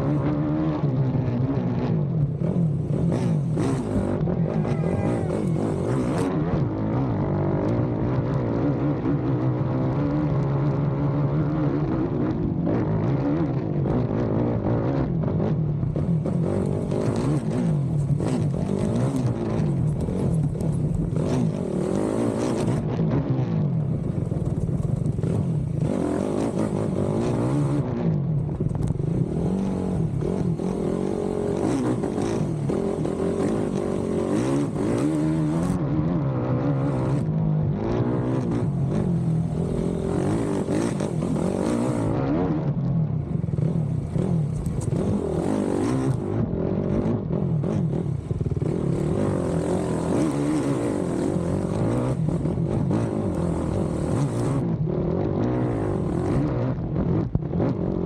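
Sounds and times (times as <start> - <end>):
quad bike engine revving: 0.0 - 58.0
quad bike knocks and clatter: 28.4 - 29.1.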